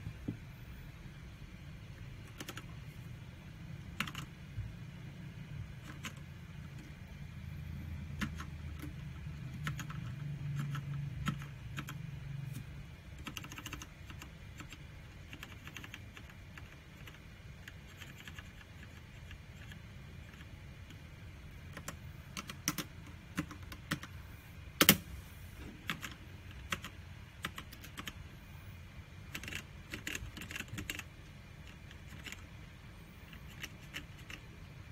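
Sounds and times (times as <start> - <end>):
mechanical keyboard clicks: 2.2 - 2.7, 4.0 - 4.4, 5.8 - 6.2, 8.1 - 12.0, 13.2 - 21.0, 21.7 - 24.1, 25.8 - 28.2, 29.3 - 32.4.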